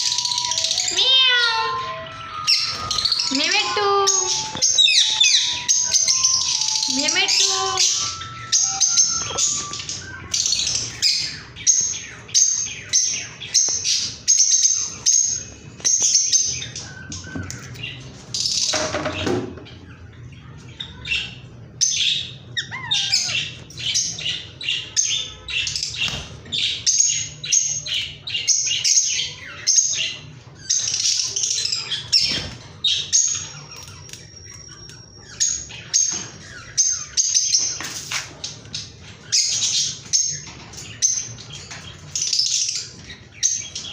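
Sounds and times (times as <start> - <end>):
parrot chirping: 0.0 - 18.9, 20.4 - 43.9
harsh parrot call: 22.6 - 23.6.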